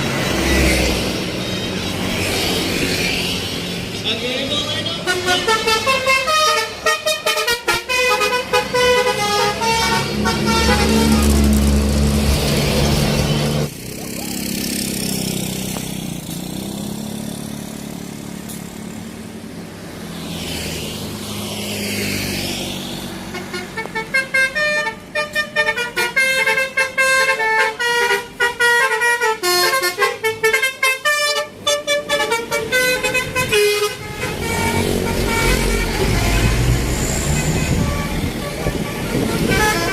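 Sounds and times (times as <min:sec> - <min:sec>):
bus engine and road noise: 0:00.0 - 0:39.9
musical bus horn: 0:05.0 - 0:11.8, 0:23.3 - 0:39.9.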